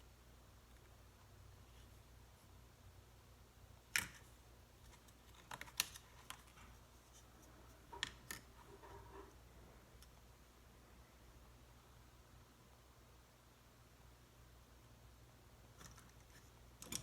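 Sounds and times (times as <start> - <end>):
small tools clicking and tapping: 16.8 - 17.0.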